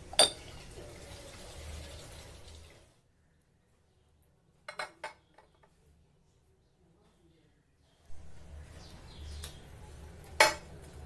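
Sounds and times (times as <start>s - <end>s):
glassware clinks: 0.1s - 0.5s, 4.6s - 5.5s, 9.8s - 10.8s
liquid pouring into container: 0.3s - 3.0s.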